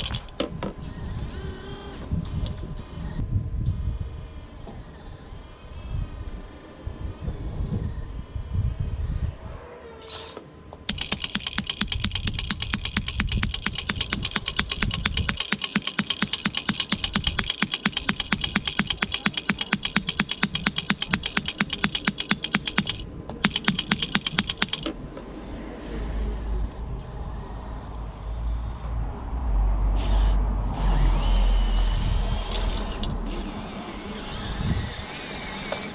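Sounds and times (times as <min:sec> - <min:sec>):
breaker hammer rattling: 0:10.9 - 0:24.9
low rumbling: 0:24.8 - 0:35.2.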